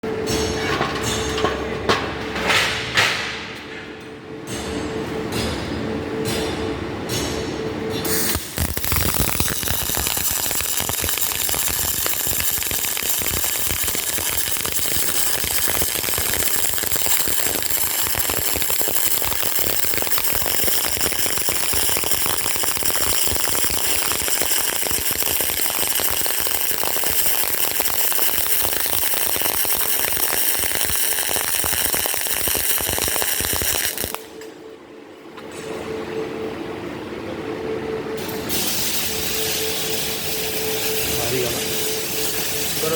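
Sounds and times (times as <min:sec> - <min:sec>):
welding arc crackling: 0:08.0 - 0:34.5, 0:38.2 - 0:42.9.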